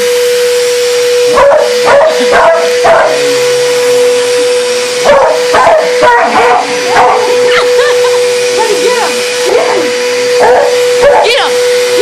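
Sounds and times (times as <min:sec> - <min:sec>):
motor whining: 0:00.0 - 0:12.0
dog barking: 0:01.3 - 0:03.2, 0:05.0 - 0:07.7, 0:09.5 - 0:11.4.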